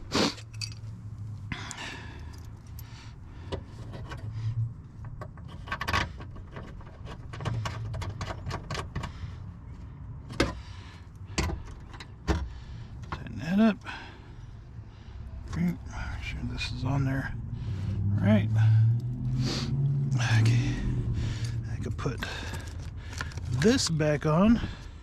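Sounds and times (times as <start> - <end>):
steady low hum: 9.1 - 25.0.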